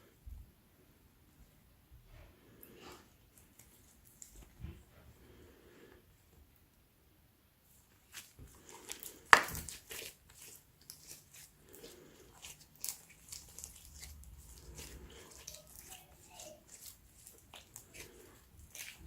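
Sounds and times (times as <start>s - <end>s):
slime kneaded by hand: 7.8s - 19.0s
sharp loud slime pop: 9.3s - 9.7s.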